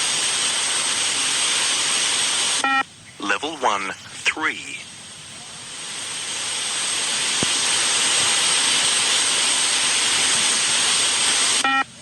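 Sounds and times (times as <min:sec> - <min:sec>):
loud rushing hiss: 0:00.0 - 0:11.6.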